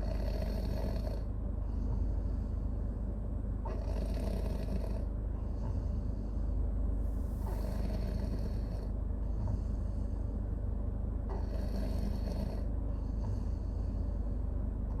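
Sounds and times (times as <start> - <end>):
baby snoring: 0.0 - 1.3, 3.7 - 5.1, 7.6 - 8.9
steady low rumble: 0.0 - 15.0.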